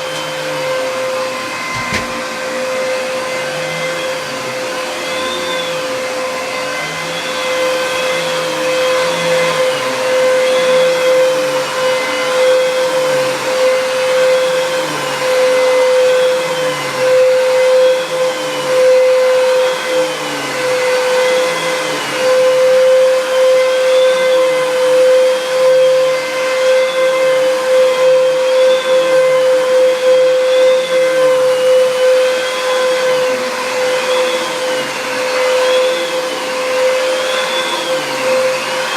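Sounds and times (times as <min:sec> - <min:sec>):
vacuum cleaner motor whine: 0:00.0 - 0:38.9.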